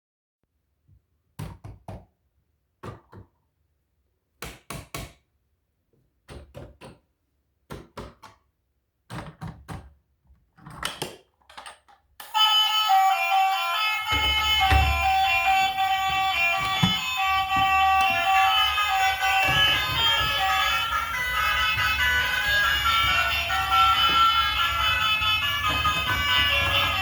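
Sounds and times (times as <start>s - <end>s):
guitar music: 13.5s - 27.0s
knocking: 14.1s - 27.0s.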